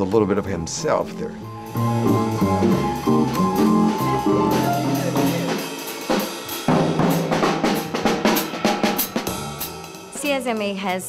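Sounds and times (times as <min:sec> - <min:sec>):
jazz combo playing: 0:00.0 - 0:10.7
snare and cymbal strokes: 0:01.5 - 0:10.8.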